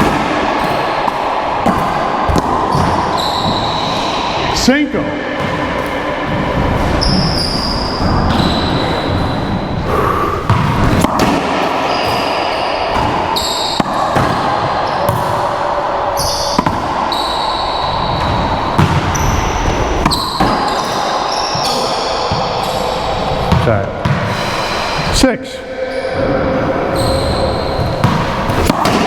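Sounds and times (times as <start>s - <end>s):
racquet smacking ball: 0.0s - 4.1s, 10.5s - 15.5s, 16.2s - 22.4s, 27.8s - 29.0s
sneakers squeaking on floor: 0.0s - 4.6s, 5.3s - 9.9s, 10.5s - 15.4s, 16.2s - 24.5s, 25.9s - 29.0s.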